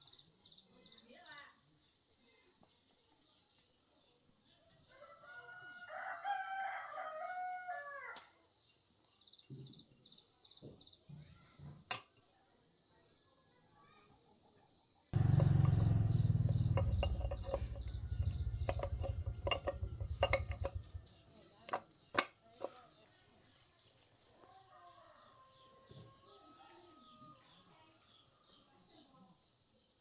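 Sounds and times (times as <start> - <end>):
small engine running and stopping: 15.2 - 21.2.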